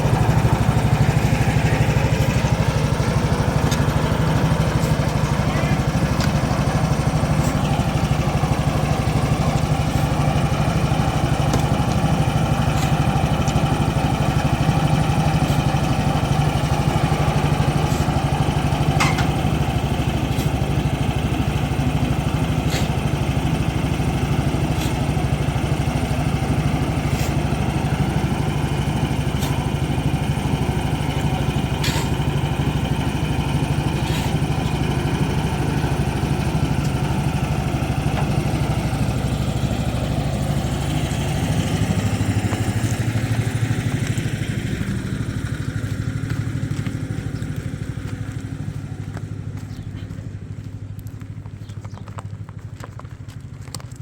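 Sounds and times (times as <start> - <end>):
engine running steadily: 0.0 - 54.0.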